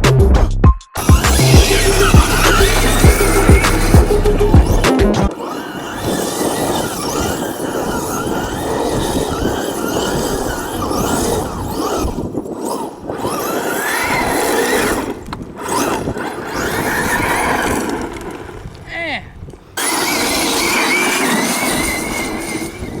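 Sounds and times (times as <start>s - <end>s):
rushing noise: 1.0s - 5.0s
electric motor whining: 1.0s - 23.0s.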